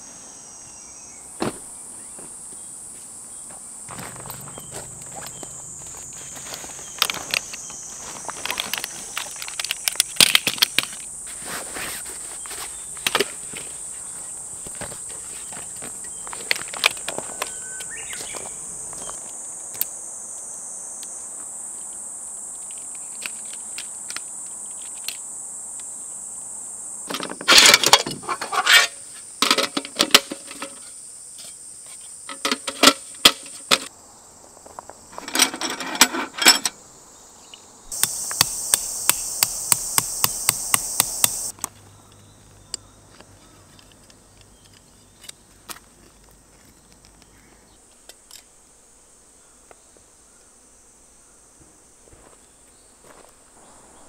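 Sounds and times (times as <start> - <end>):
insects buzzing: 0.0 - 54.0
sharp clicks and knocks: 37.9 - 41.7.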